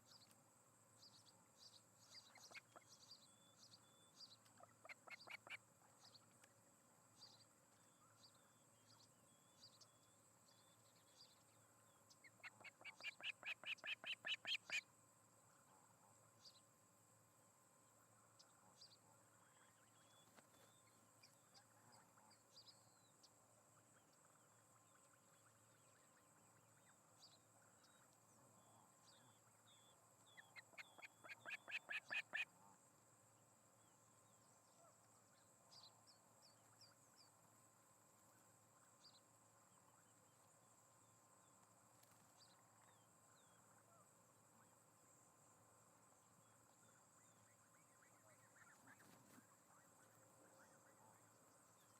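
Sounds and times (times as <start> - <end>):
faint steady hum: 0.0 - 51.9
bird chirping: 1.0 - 14.9, 18.4 - 32.5.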